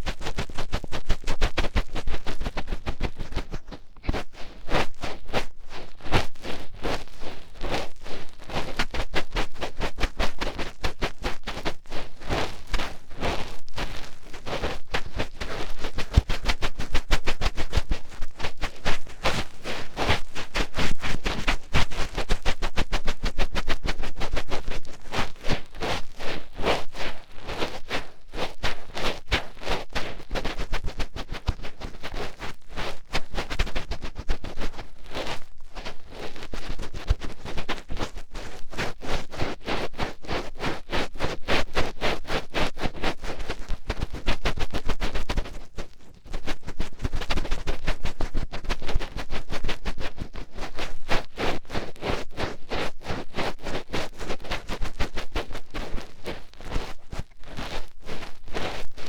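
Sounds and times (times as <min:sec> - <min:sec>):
fingertip scratching in ear: 0:00.0 - 0:07.9
fingertips scratching in ear: 0:00.0 - 0:38.8.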